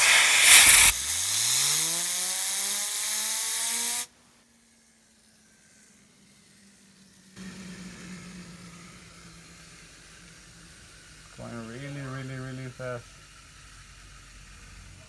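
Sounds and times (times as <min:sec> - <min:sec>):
loud rushing hiss: 0:00.0 - 0:04.1.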